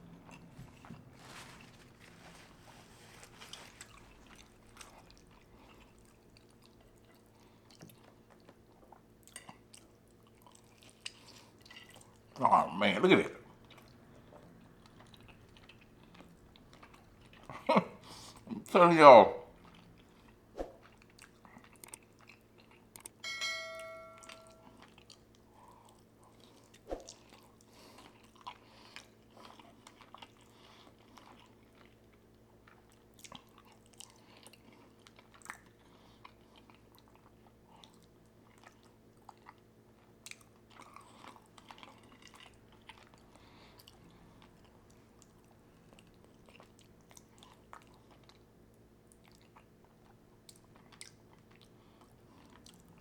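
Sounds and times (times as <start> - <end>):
person chewing food: 0.0 - 12.4, 13.5 - 18.5, 19.5 - 23.2, 24.8 - 53.0
short ringing tone: 23.2 - 24.7.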